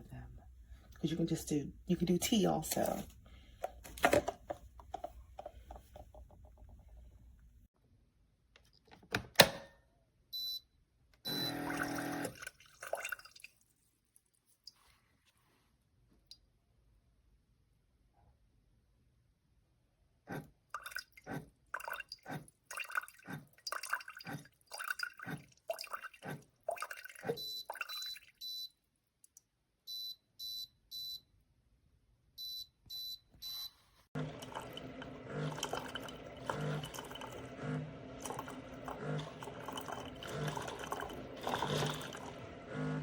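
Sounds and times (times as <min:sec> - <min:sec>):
coffee maker spurting and dripping: 0:11.3 - 0:13.6, 0:20.3 - 0:28.6, 0:34.2 - 0:43.0.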